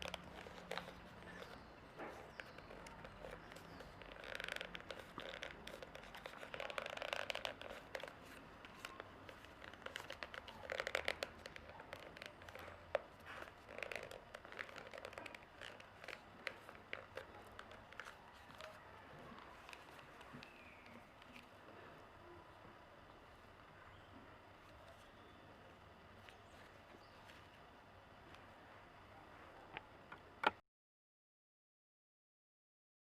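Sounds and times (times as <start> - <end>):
paper rustling and creasing: 0.0 - 22.2, 24.6 - 28.6.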